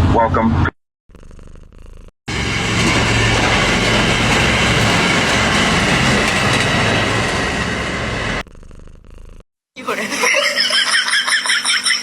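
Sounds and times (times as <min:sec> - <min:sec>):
mechanical rumbling and rattling: 0:02.3 - 0:09.4.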